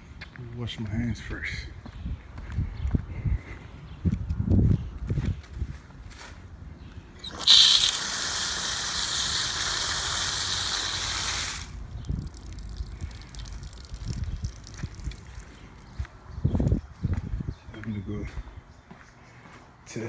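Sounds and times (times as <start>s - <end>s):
water running from a tap: 7.2s - 14.8s.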